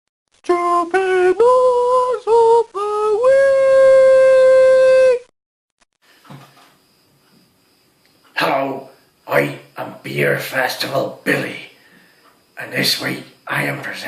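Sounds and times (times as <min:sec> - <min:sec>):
person singing a jingle: 0:00.5 - 0:05.2.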